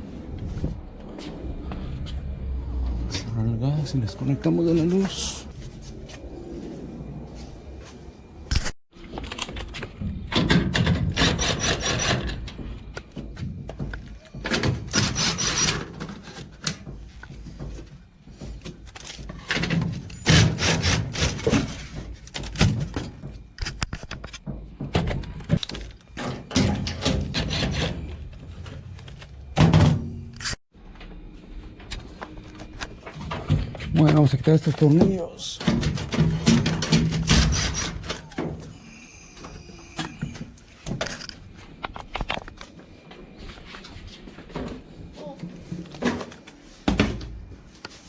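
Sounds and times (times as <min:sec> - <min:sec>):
dryer cabinet knocks and scraping: 0:35.0 - 0:37.5.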